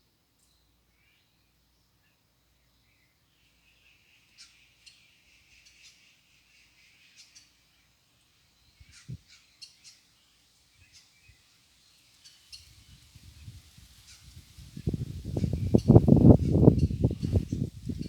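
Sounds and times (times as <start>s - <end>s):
bird chirps: 8.6s - 13.5s, 14.1s - 18.0s.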